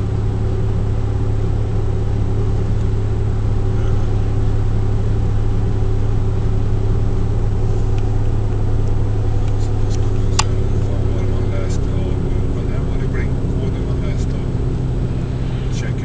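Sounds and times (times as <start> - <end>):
car engine and road drone: 0.0 - 16.0.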